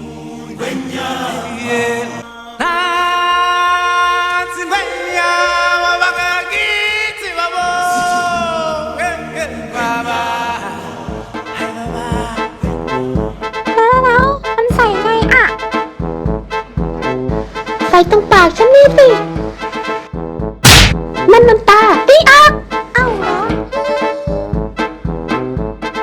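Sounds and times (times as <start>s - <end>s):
voices singing with vibrato: 0.0s - 13.4s, 23.2s - 24.6s.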